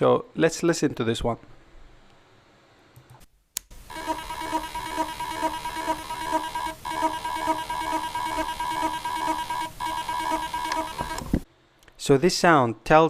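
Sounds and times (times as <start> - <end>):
hard drive buzzing: 3.8 - 11.4.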